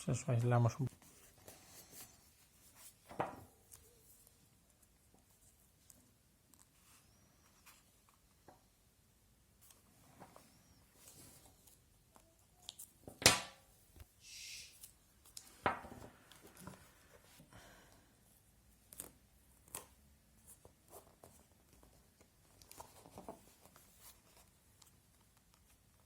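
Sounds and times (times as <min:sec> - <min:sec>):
small clicks and rustles: 0:18.8 - 0:26.0.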